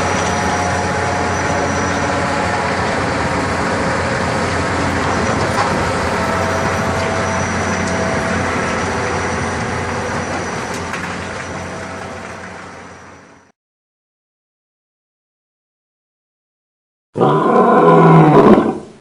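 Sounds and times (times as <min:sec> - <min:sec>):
digging machine engine running: 0:00.0 - 0:13.5.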